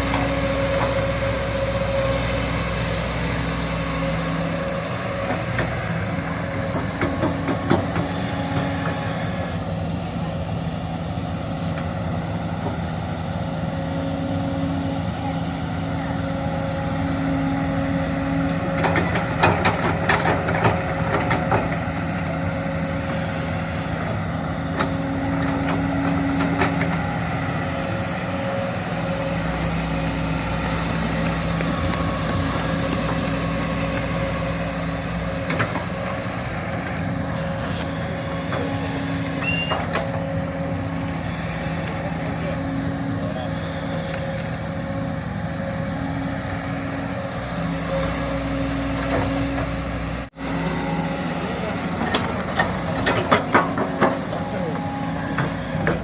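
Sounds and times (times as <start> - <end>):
excavator engine running: 0.0 - 56.0.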